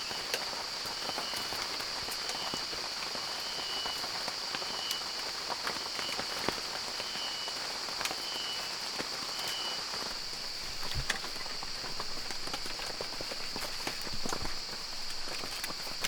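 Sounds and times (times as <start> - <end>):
rain falling: 0.0 - 16.0
drops pattering: 10.0 - 16.0.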